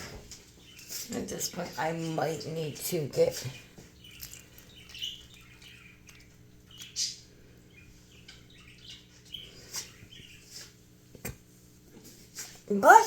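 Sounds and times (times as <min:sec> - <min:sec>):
low steady hum: 0:00.0 - 0:13.0
small bird chirping: 0:00.5 - 0:10.8.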